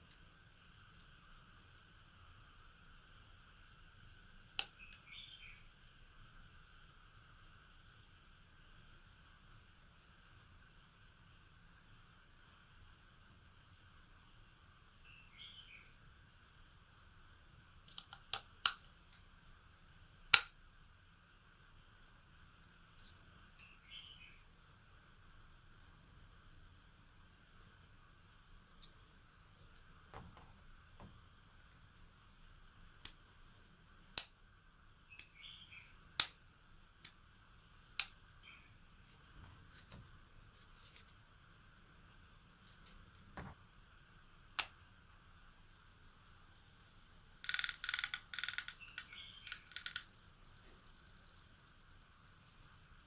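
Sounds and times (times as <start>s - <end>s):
faint steady hum: 0.0s - 53.0s
sharp clicks: 46.6s - 53.0s.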